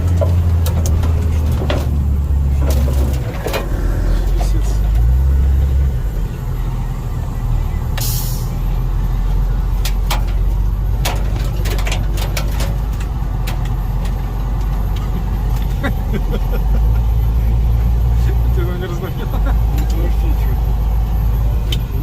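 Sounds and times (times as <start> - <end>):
knocks and clatters from bumps: 0.0 - 5.1, 9.8 - 15.8
engine and drivetrain rumble: 0.0 - 22.0.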